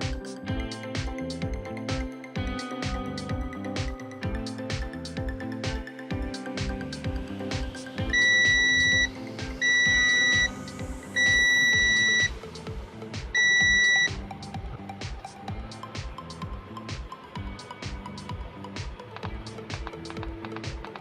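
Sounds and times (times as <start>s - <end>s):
background music with steady beat: 0.0s - 21.0s
high electronic beeps: 8.1s - 12.3s, 13.4s - 14.2s.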